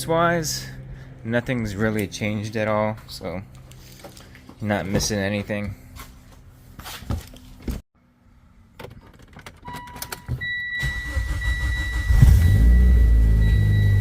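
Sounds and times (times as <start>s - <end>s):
car engine cranking and starting: 8.8s - 14.0s.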